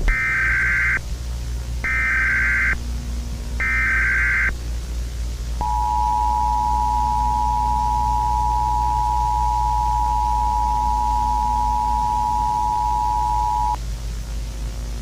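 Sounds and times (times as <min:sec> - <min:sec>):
low hum: 0:00.0 - 0:15.0
two-tone alert alarm: 0:05.6 - 0:13.8.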